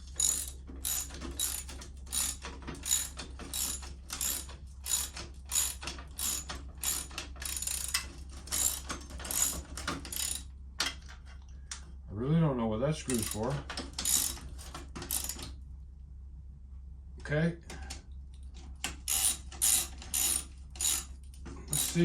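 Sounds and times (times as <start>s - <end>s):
socket ratchet clicking: 14.0s - 14.4s, 15.1s - 15.4s, 18.9s - 21.1s, 21.7s - 22.0s.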